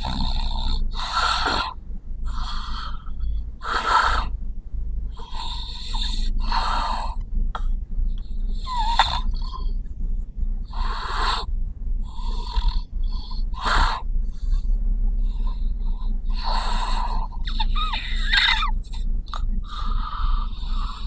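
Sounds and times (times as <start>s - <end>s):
person snoring loudly: 0.0s - 2.9s, 16.3s - 18.8s
steady low hum: 0.0s - 21.0s.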